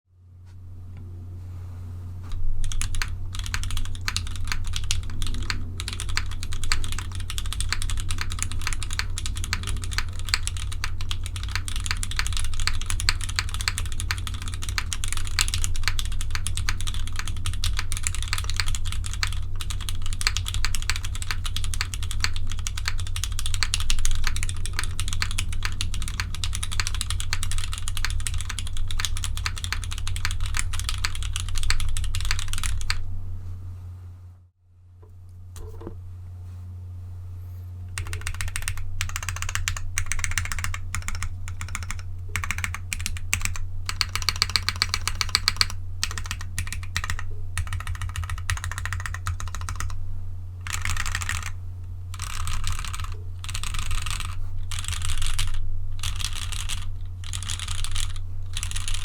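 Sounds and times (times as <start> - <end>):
steady low hum: 0.1 - 59.0
fast typing on a keyboard: 2.6 - 33.0, 38.0 - 50.0, 50.6 - 59.0.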